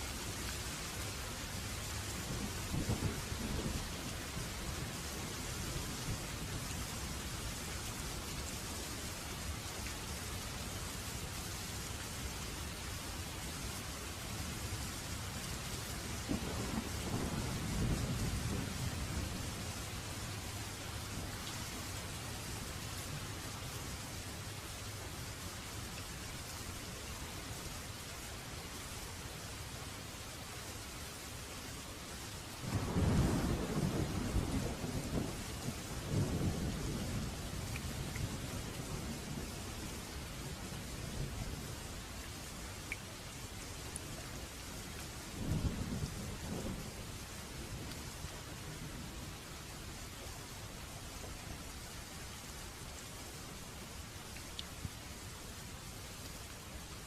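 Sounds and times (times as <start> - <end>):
steady rain hiss: 0.0 - 57.0
rumble of thunder: 2.2 - 7.2, 16.2 - 19.7, 32.7 - 40.1, 45.4 - 48.0.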